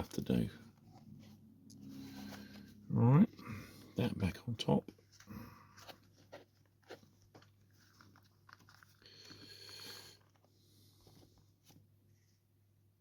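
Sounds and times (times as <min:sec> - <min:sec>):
plastic rubbing: 0:04.9 - 0:09.4.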